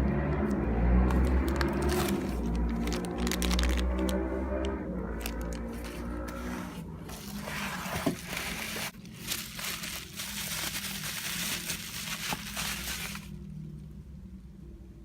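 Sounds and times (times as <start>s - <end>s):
plastic packaging crinkling: 1.1s - 4.2s, 5.1s - 13.5s.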